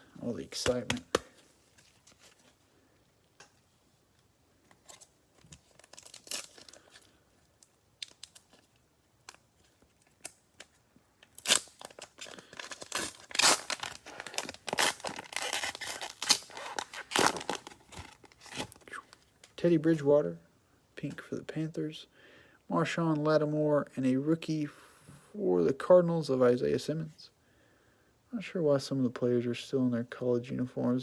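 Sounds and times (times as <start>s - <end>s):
cellophane wrapper tearing and crinkling: 4.8s - 19.3s.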